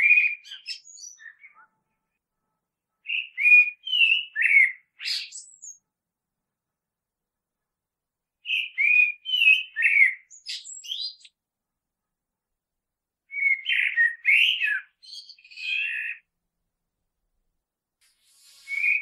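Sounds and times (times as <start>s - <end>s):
blackbird singing: 0.0s - 1.9s, 3.0s - 5.8s, 8.4s - 11.4s, 13.3s - 16.3s, 18.3s - 19.0s.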